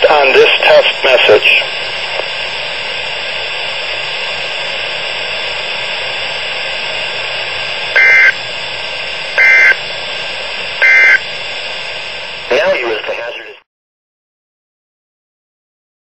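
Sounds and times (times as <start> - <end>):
radio hiss: 0.0 - 13.7
digital data tone bursts: 8.0 - 8.4, 9.4 - 9.8, 10.8 - 11.2.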